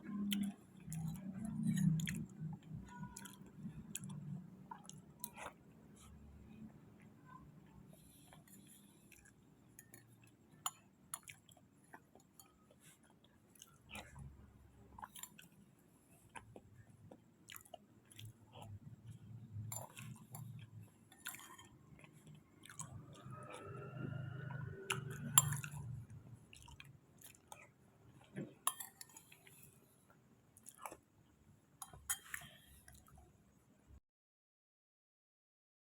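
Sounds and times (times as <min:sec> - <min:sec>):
chewing and wet mouth smacks: 0:00.2 - 0:06.7, 0:08.2 - 0:14.3, 0:15.0 - 0:15.6, 0:16.3 - 0:29.7, 0:30.6 - 0:31.0.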